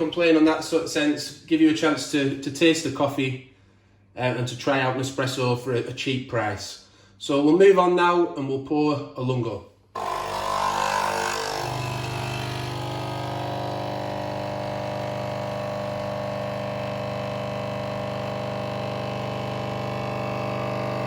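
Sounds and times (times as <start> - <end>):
coffee machine pump buzzing: 10.0 - 21.0.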